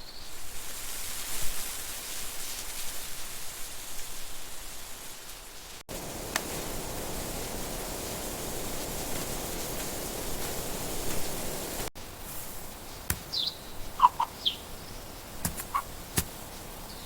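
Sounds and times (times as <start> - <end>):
steady noise hiss: 0.0 - 17.0
high bird chirps: 12.9 - 16.0.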